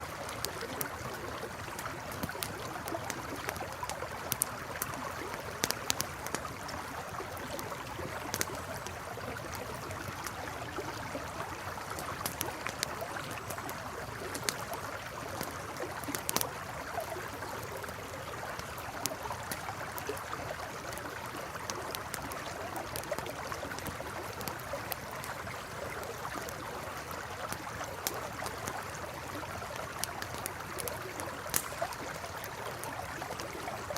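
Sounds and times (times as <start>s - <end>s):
campfire crackling: 0.0s - 33.9s
river flowing: 0.0s - 33.9s
fire popping sharply: 29.8s - 33.7s.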